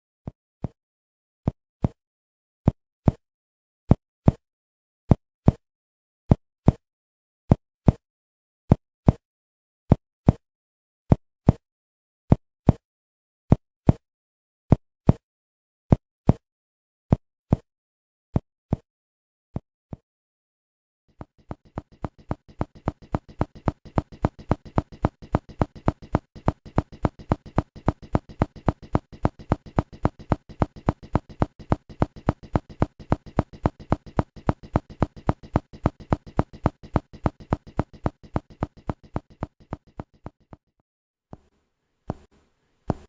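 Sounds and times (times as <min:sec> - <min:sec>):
percussion struck in fast rhythm: 0:21.5 - 0:40.4.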